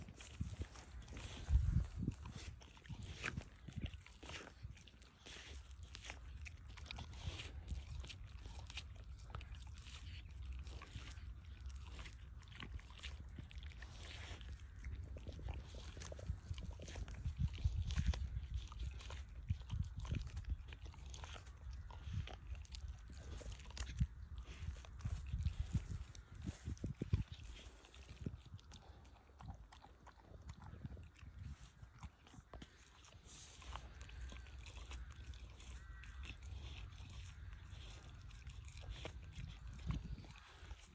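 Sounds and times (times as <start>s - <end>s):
low steady rumble: 0.0s - 3.8s
dog chewing meat and bone: 0.0s - 40.9s.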